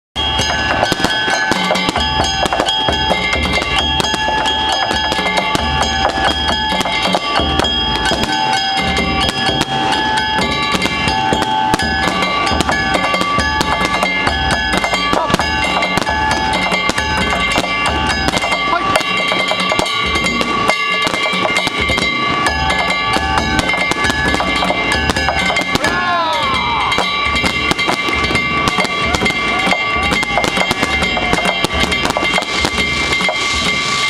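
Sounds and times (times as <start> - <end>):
drums beating fast: 0.2 - 34.0
metallic ringing tones: 0.2 - 34.0
pulsing low beat: 0.2 - 34.0.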